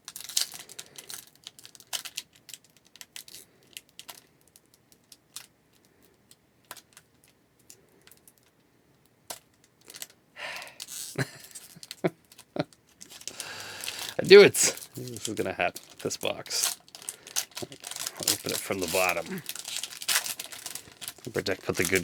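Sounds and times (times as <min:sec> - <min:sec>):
foil wrapper crinkling and tearing: 0:00.0 - 0:07.4, 0:09.3 - 0:22.0
fingers picking at foil: 0:10.7 - 0:22.0.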